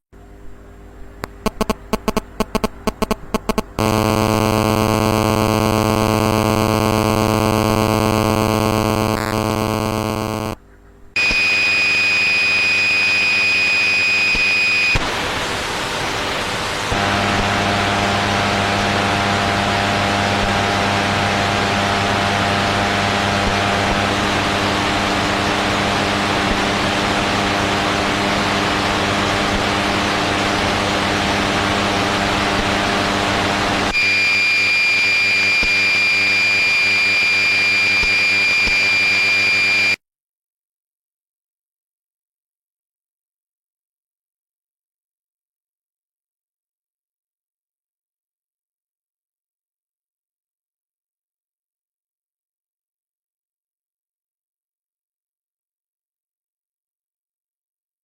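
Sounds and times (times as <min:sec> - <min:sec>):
high whine: 0:01.2 - 0:10.6, 0:11.2 - 0:40.0
electronic buzzing and static: 0:01.2 - 0:40.0.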